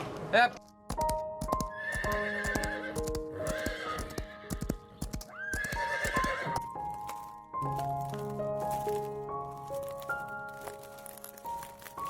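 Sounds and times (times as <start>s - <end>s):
soft background music: 0.0s - 12.0s
horse hooves clopping: 0.8s - 11.4s
horse whinnying and blowing: 1.6s - 6.7s.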